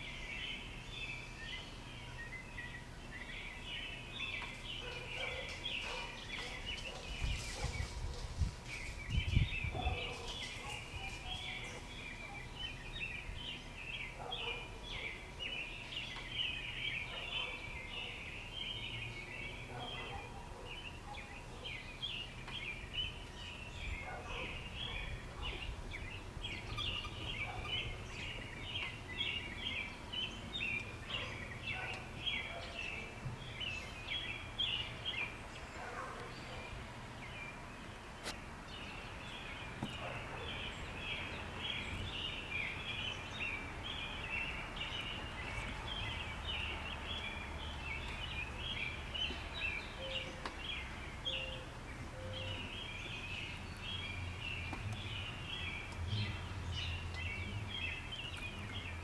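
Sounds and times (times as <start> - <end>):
low outdoor rumble: 21.3 - 59.0.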